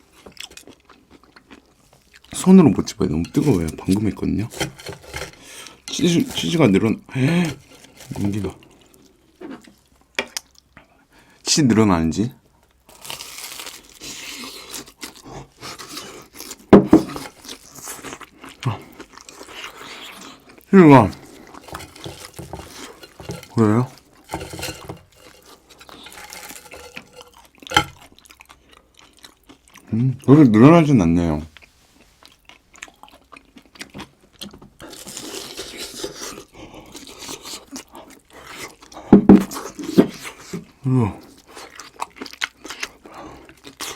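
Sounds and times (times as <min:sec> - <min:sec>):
crunchy food chewing: 0:00.0 - 0:02.4, 0:12.8 - 0:29.9, 0:31.6 - 0:43.9
breaded cutlet crunching: 0:20.6 - 0:29.8.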